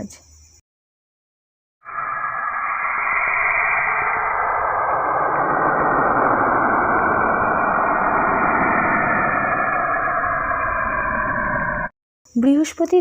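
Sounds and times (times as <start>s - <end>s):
rushing drone: 1.8s - 11.9s.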